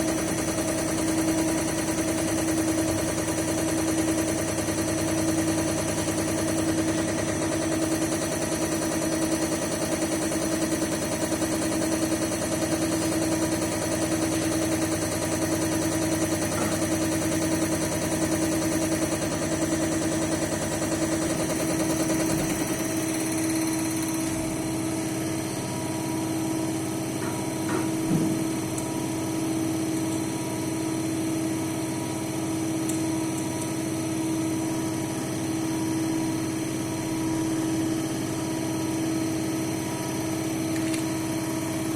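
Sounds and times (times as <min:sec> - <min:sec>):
injector test bench humming and pulsing: 0:00.0 - 0:41.9.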